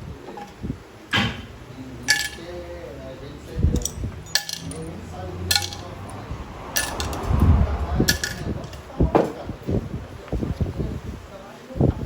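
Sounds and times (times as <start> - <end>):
metal parts clinking: 2.0 - 2.7, 3.5 - 7.4, 8.1 - 8.8.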